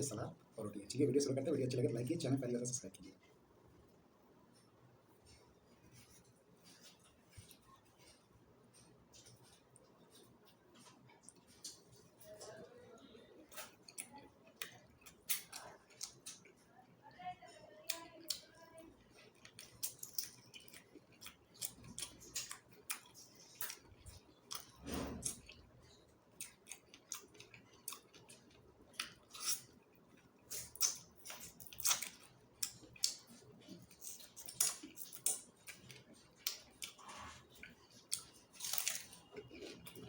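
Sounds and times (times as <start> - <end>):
wet chewing and mouth smacks: 19.1 - 40.0.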